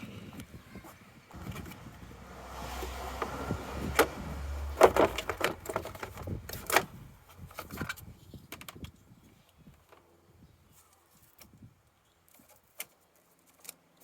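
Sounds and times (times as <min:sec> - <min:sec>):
clicks and clunks of handling: 0:03.2 - 0:09.0.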